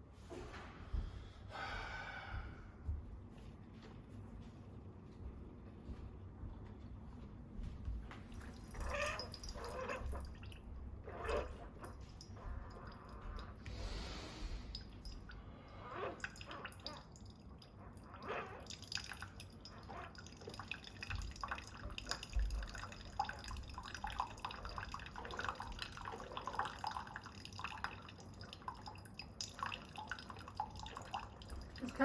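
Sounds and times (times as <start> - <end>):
coffee maker sputtering and dripping: 8.3 - 13.8, 14.6 - 32.0.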